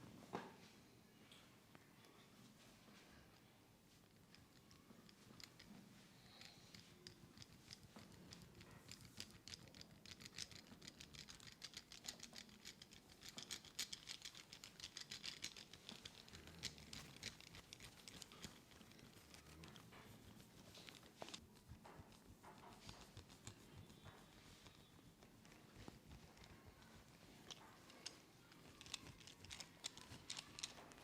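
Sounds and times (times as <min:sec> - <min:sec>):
fingers rubbing through hair: 0:06.3 - 0:31.0.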